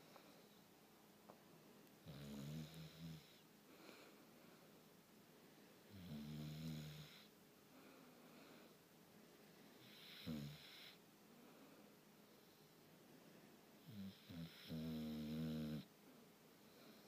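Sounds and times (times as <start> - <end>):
dog snoring: 2.0 - 3.4, 5.9 - 7.3, 9.8 - 11.0, 13.8 - 15.9.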